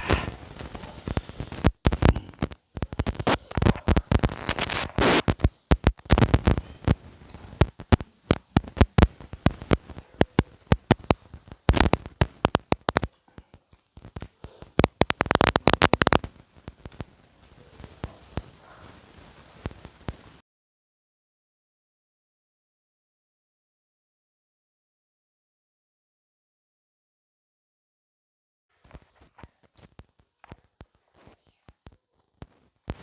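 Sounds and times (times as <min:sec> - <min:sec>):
sharp microphone clicks and crackles: 0:00.0 - 0:20.4, 0:28.7 - 0:33.0.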